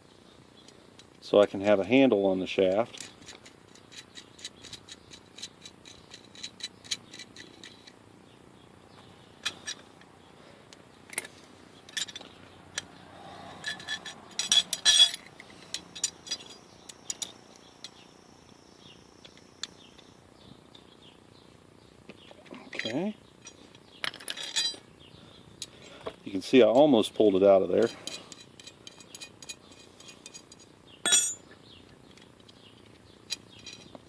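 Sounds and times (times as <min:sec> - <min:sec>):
metal tool clicks and clinks: 0:13.5 - 0:18.0, 0:22.7 - 0:24.8, 0:27.8 - 0:31.5.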